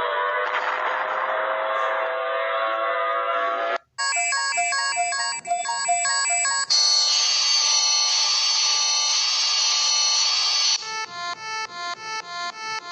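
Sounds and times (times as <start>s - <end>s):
synthesized siren alarm tone: 1.4s - 12.9s
electronic chime melody: 4.0s - 8.1s.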